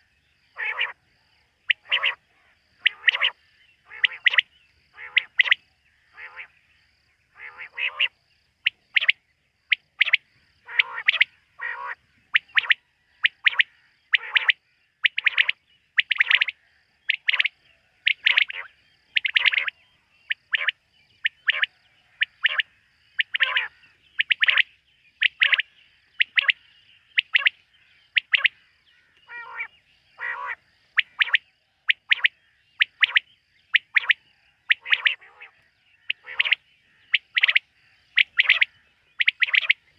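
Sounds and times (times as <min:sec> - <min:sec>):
quail calling: 0:00.6 - 0:01.0, 0:01.7 - 0:02.2, 0:02.8 - 0:06.6, 0:07.3 - 0:39.9.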